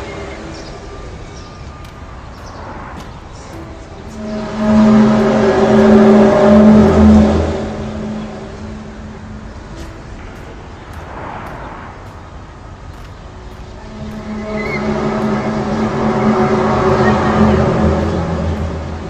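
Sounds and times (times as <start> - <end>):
low horn-like drone: 0.0 - 1.8, 2.4 - 10.2, 13.5 - 19.0.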